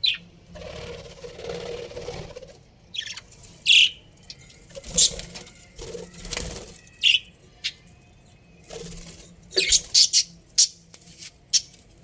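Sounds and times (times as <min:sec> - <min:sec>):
budgerigars chirping: 0:00.0 - 0:00.2, 0:02.9 - 0:04.0, 0:09.5 - 0:10.8.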